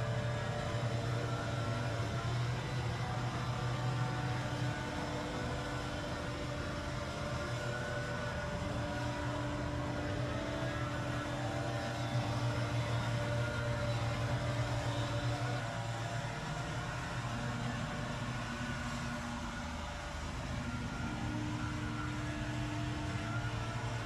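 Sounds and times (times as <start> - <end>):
small gasoline engine running: 0.0 - 24.0.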